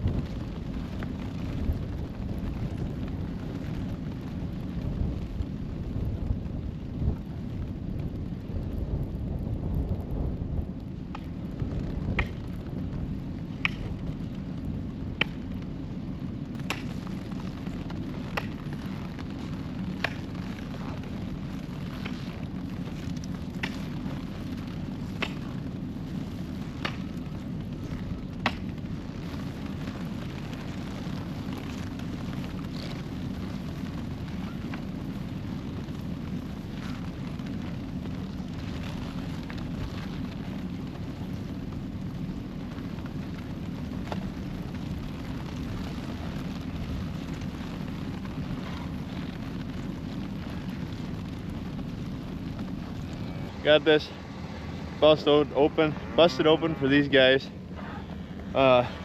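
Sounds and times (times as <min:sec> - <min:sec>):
steady low noise: 0:00.0 - 0:59.0
axe chopping ice: 0:16.7 - 0:17.0, 0:25.2 - 0:25.4, 0:28.4 - 0:28.7.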